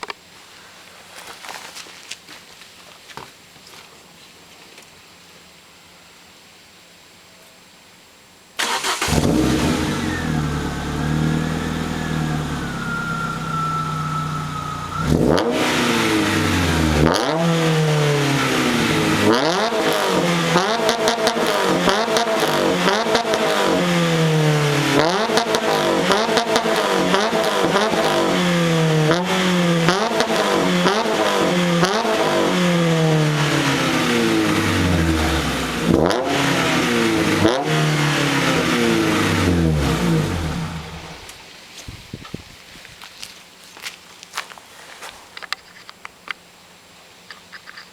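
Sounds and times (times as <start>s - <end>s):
car engine running and revving: 9.0s - 41.2s.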